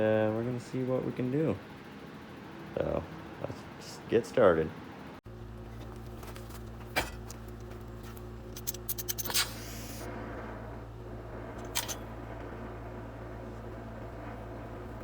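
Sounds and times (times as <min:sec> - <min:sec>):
low electrical hum: 0:00.0 - 0:15.0
small tools clicking: 0:08.5 - 0:10.1.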